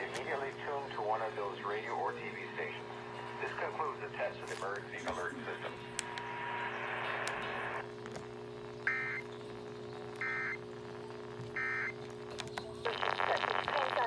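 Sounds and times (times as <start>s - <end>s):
static hiss: 0.0s - 8.7s
steady low hum: 0.0s - 14.0s.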